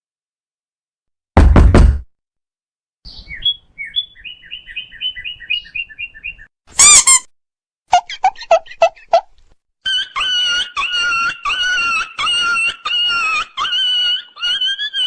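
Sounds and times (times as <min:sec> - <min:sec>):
loud cartoon knocks: 0:01.4 - 0:02.1
high-pitched squeak: 0:06.7 - 0:07.3.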